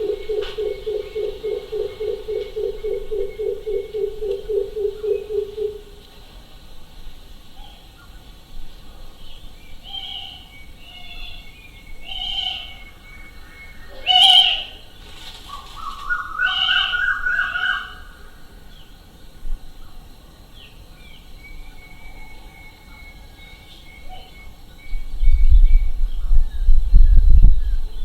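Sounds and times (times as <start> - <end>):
birds calling: 0.0 - 5.8, 9.8 - 18.9.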